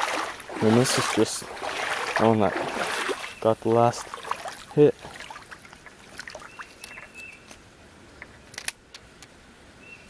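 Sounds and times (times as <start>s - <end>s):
faint creekside ambience: 0.0s - 10.0s
bird call: 6.4s - 7.5s.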